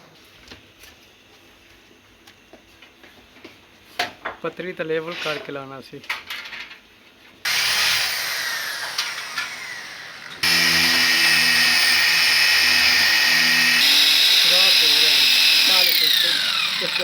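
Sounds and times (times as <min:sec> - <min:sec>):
electric drill drilling into wall: 0:07.5 - 0:17.0.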